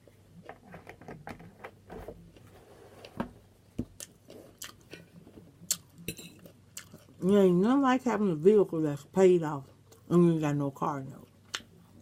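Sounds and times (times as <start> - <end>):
person chewing food: 3.9 - 7.3.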